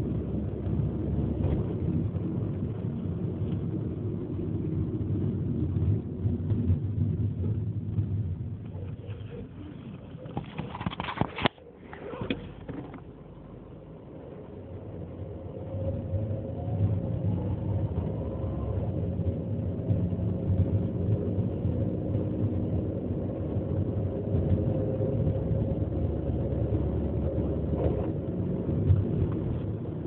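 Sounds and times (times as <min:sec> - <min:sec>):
faint whine: 0:00.0 - 0:20.1.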